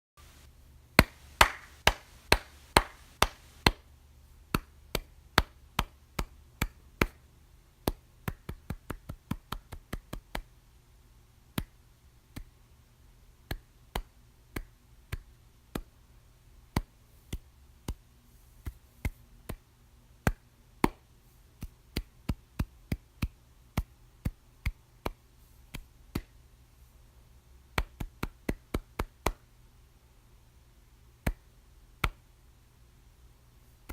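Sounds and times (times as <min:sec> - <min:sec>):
faint low hum: 0:00.2 - 0:33.9
person clapping softly: 0:01.0 - 0:03.8.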